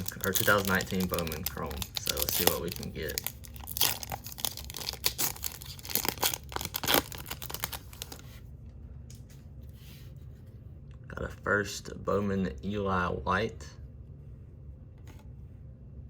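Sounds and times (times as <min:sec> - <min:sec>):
wrapper tearing and crinkling: 0:00.0 - 0:08.2
cards rustling: 0:00.0 - 0:08.4.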